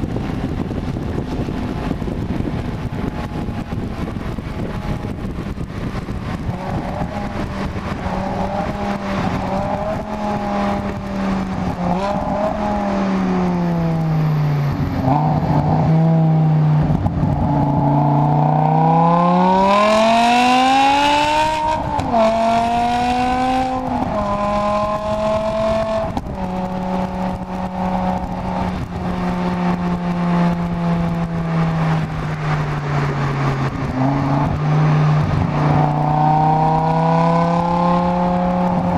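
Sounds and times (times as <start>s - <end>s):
car exhaust accelerating: 0.0s - 38.9s.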